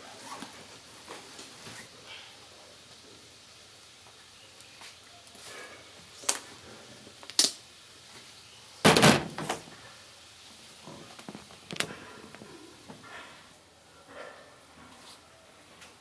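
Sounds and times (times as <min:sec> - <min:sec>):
knocks of hard objects handled: 0:08.9 - 0:09.7.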